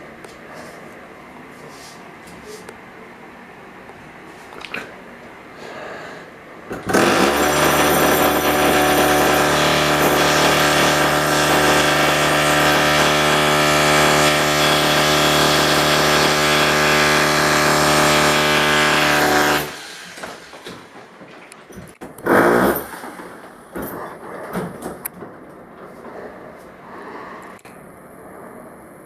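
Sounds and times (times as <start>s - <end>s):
toilet pump motor running: 6.9s - 20.1s.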